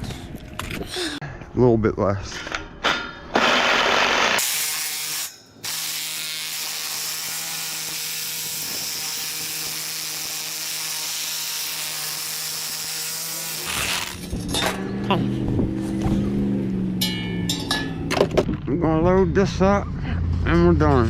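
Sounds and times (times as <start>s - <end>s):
reciprocating saw cutting metal: 3.3s - 15.0s.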